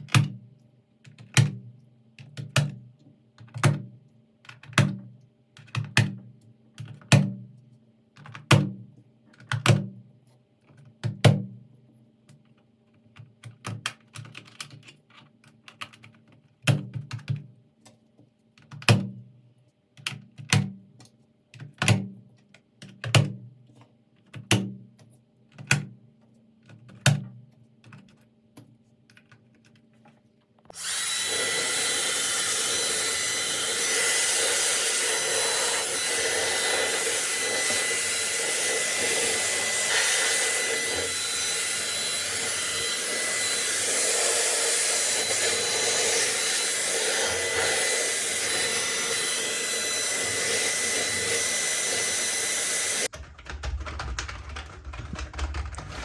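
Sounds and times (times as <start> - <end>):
electric blower whining: 30.7 - 53.1.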